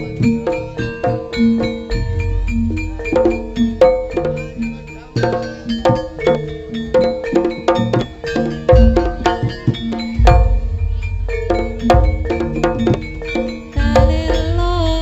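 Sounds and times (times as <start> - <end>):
hand drum strokes: 0.0 - 15.0
struck tuned metal percussion: 0.0 - 15.0
deep low boom: 10.2 - 12.7.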